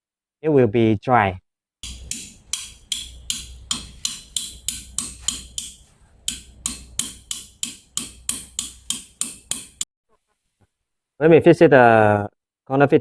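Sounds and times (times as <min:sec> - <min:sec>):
hammer tapping metal fitting: 0:01.8 - 0:09.8.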